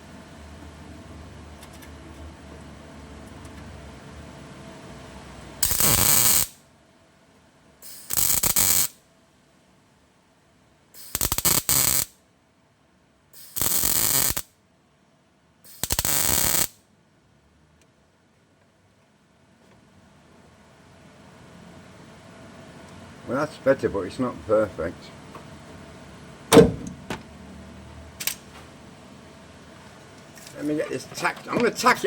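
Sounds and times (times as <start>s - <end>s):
steady background hum: 0.0s - 32.0s
welder arc firing: 5.6s - 6.6s, 7.8s - 9.0s, 11.0s - 12.1s, 13.4s - 14.5s, 15.7s - 16.8s.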